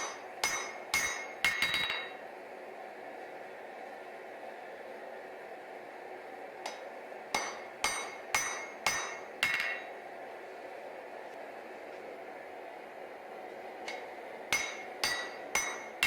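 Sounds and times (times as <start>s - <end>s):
hammer striking steel on anvil: 0.0s - 2.2s, 6.7s - 10.0s, 13.9s - 16.0s
steady background noise: 0.0s - 16.0s.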